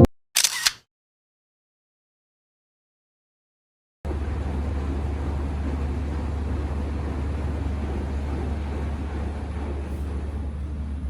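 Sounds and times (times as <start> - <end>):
low hum and hiss: 4.1 - 11.0.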